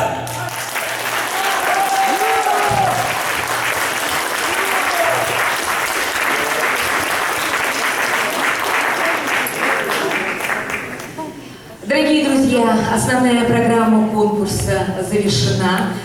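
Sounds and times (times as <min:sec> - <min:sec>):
audience applauding: 0:00.0 - 0:11.4.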